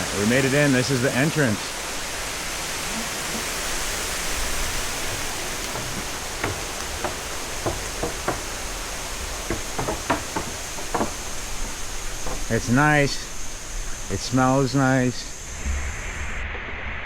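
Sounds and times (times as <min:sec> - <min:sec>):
steady outdoor hiss: 0:00.0 - 0:17.0
light irregular taps: 0:03.8 - 0:14.0.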